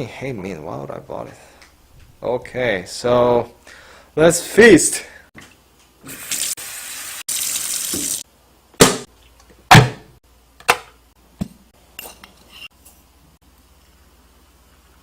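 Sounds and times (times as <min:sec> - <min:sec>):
water pouring: 0:06.1 - 0:08.2.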